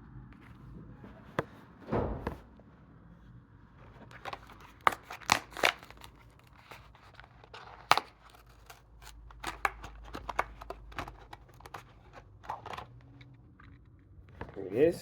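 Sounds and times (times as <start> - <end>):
plastic blister pack crackling and snapping: 4.0 - 13.9.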